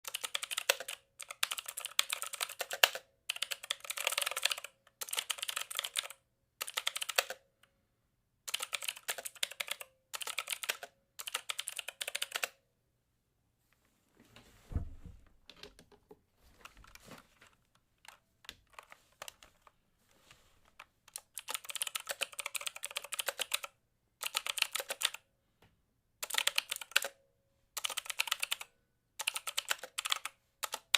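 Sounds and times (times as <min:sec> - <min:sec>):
mechanical keyboard typing: 0:00.0 - 0:07.4, 0:08.5 - 0:12.6, 0:18.0 - 0:19.7, 0:20.7 - 0:25.2, 0:26.2 - 0:27.2, 0:27.8 - 0:30.9
low thump: 0:14.7 - 0:15.3.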